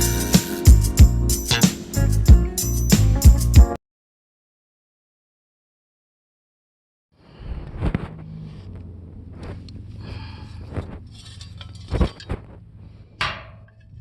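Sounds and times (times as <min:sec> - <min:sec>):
sharp knocks and scrapes: 0:10.6 - 0:14.0.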